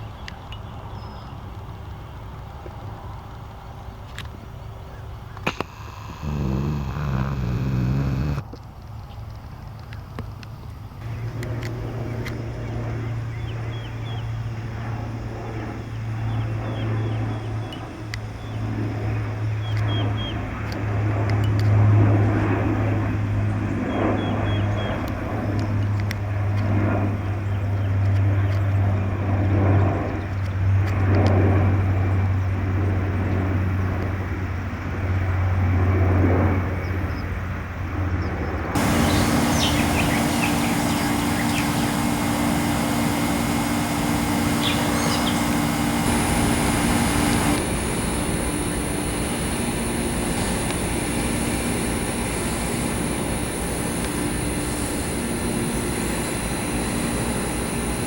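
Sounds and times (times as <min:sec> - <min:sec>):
low engine drone: 0:05.4 - 0:08.4, 0:11.0 - 0:20.7, 0:38.8 - 0:58.0
steady high hum: 0:05.4 - 0:08.4, 0:11.0 - 0:20.5, 0:38.8 - 0:58.0
hissy engine sound: 0:05.5 - 0:08.4, 0:11.0 - 0:20.3, 0:38.8 - 0:58.0
bird chirps: 0:38.8 - 0:58.0.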